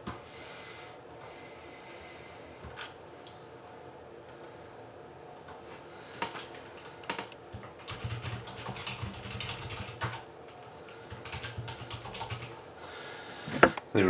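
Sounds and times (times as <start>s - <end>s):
typing on computer keyboard: 6.2s - 12.6s.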